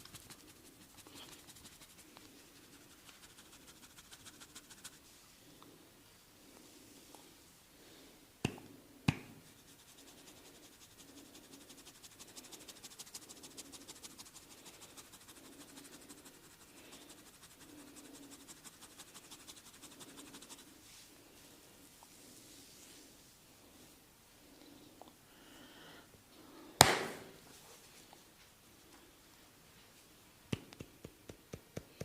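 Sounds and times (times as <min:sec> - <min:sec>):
sharp cracks: 0:26.8 - 0:27.3
light taps and rubbing on skin: 0:30.5 - 0:32.0.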